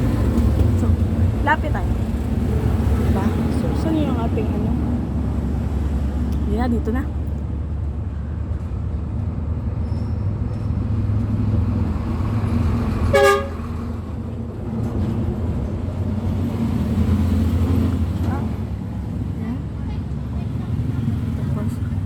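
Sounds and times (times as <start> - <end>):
road traffic rumble: 0.0 - 22.0
vehicle horn toot: 13.1 - 13.6.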